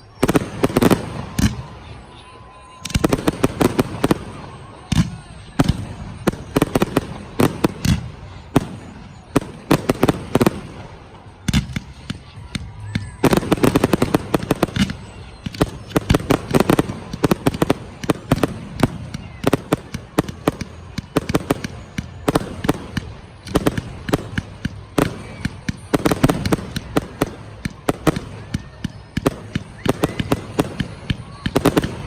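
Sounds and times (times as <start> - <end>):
fireworks bangs: 0.0 - 32.0.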